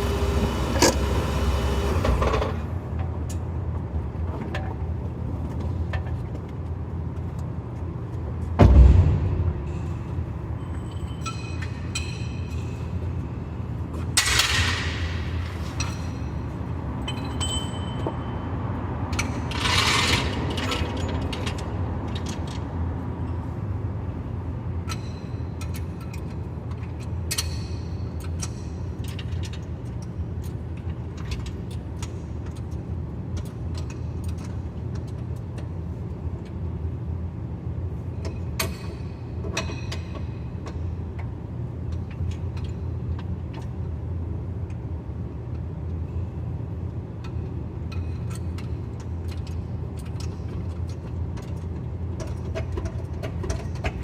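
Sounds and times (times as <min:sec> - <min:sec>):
road and drivetrain rumble: 0:00.0 - 0:08.5, 0:18.0 - 0:24.9.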